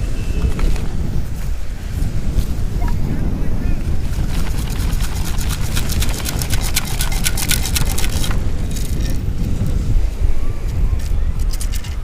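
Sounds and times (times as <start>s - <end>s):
wind buffeting microphone: 0.0s - 12.0s
sand and stones rattling in scoop: 3.9s - 9.7s.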